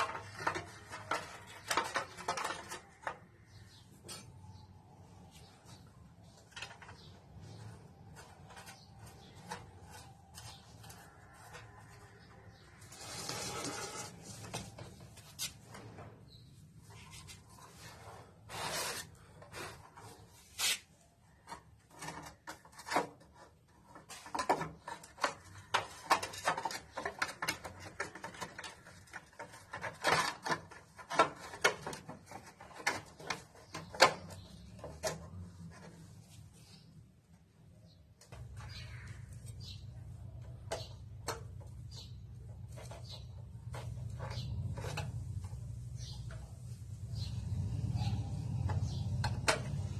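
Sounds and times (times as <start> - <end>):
rasping scrape: 7.6 - 15.8, 17.0 - 21.0
hand tools clicking and tapping: 21.4 - 35.4, 48.1 - 49.9.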